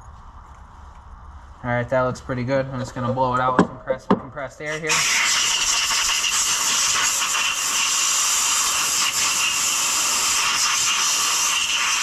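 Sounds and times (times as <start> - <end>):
air blow gun hissing: 4.7 - 12.0.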